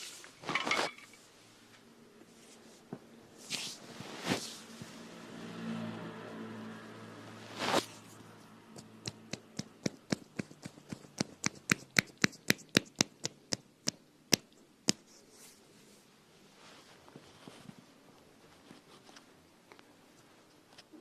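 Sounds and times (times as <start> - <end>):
brief swish: 7.5 - 8.1
sharp taps: 8.8 - 15.1.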